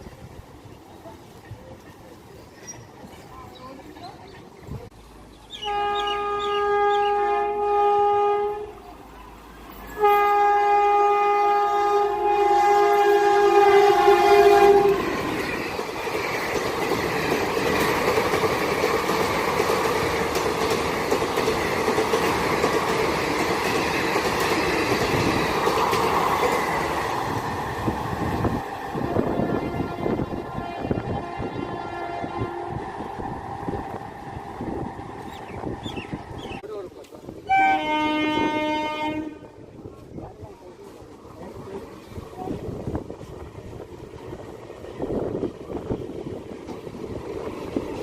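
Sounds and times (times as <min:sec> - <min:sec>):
train passing at speed: 0:00.0 - 0:48.0
train horn blasts: 0:05.6 - 0:08.8, 0:09.9 - 0:15.3, 0:29.0 - 0:33.2, 0:37.4 - 0:39.7
wheels clattering over rail joints: 0:14.6 - 0:27.6.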